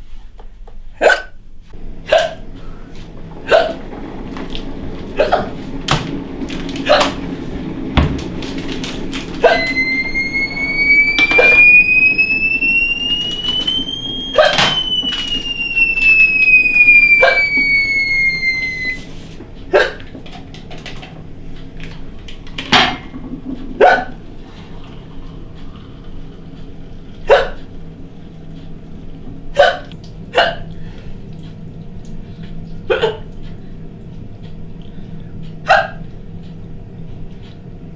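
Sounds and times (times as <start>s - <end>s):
woman hiccuping: 1.0s - 1.4s, 2.1s - 2.4s, 3.5s - 3.8s, 19.7s - 20.1s, 27.3s - 27.6s, 29.6s - 30.7s, 32.9s - 33.3s, 35.7s - 36.0s
whine rising and falling in pitch: 1.8s - 19.3s.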